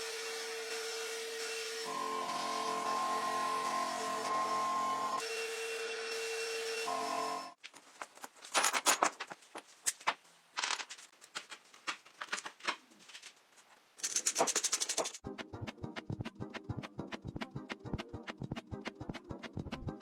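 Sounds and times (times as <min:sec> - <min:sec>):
small power tool running: 0:00.0 - 0:07.6.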